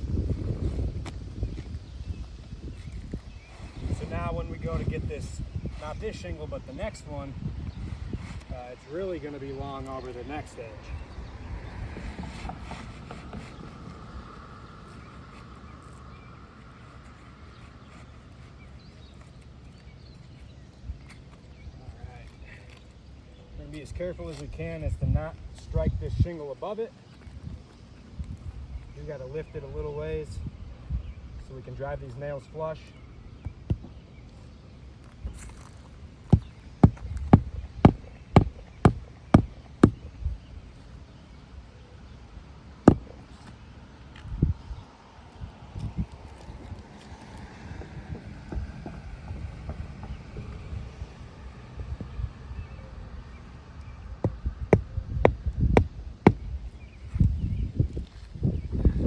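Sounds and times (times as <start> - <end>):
wind rumble on microphone: 0.0 - 19.2, 23.4 - 26.5, 27.2 - 59.0
hammer striking roofing nails: 36.4 - 40.1, 42.9 - 43.1.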